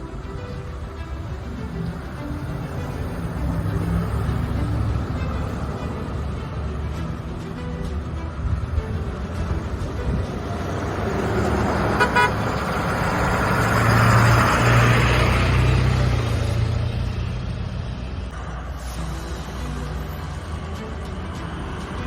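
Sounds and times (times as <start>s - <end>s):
steady low rumble: 0.0s - 13.4s
vehicle passing by: 0.0s - 22.0s.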